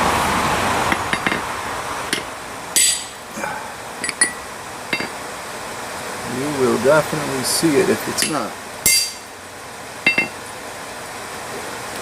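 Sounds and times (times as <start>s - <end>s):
hammer striking metal chisel: 2.1s - 3.2s, 4.0s - 5.1s, 8.2s - 9.2s, 10.1s - 10.4s.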